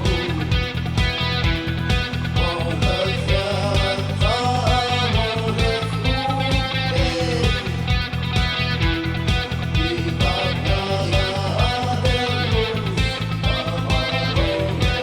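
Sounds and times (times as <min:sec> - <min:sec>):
electric guitar melody: 0:00.0 - 0:15.0
rock backing track: 0:00.0 - 0:15.0.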